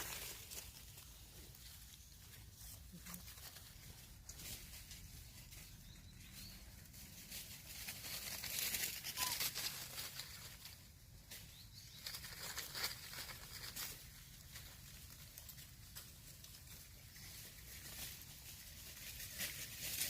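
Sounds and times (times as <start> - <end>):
rustling and scuffling: 0.0 - 20.0
faint squeak: 9.0 - 9.6.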